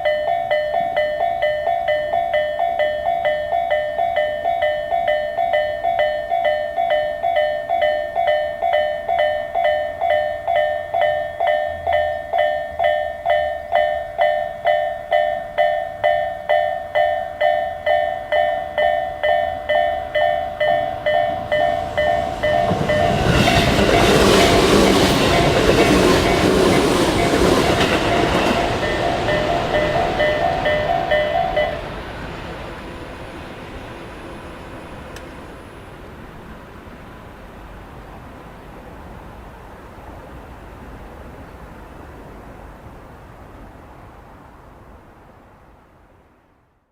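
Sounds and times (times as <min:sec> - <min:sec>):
level crossing warning bells: 0:00.0 - 0:37.2
electric train running: 0:00.0 - 0:37.4.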